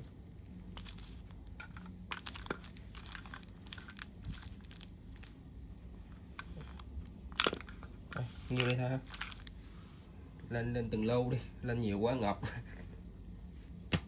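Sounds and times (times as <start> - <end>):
packaging crinkling: 0.6 - 5.4, 8.5 - 9.6.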